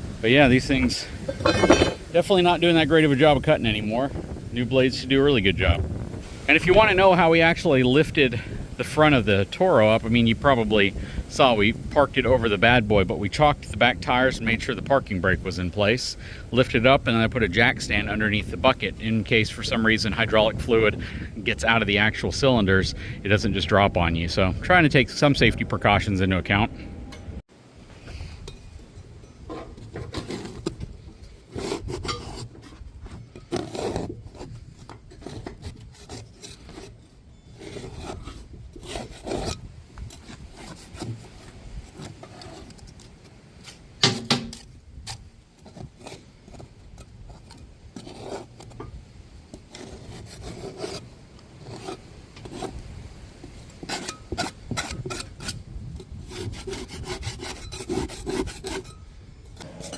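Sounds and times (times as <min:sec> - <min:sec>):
scraper scraping dirt off metal: 0:29.5 - 0:43.8, 0:44.5 - 0:48.9, 0:49.5 - 0:52.8, 0:53.6 - 0:59.9.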